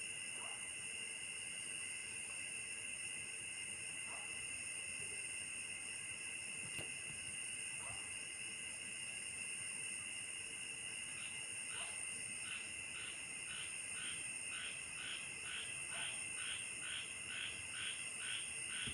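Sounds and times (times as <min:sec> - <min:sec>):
insects trilling: 0:00.0 - 0:18.9
pulsing insect call: 0:00.0 - 0:18.9.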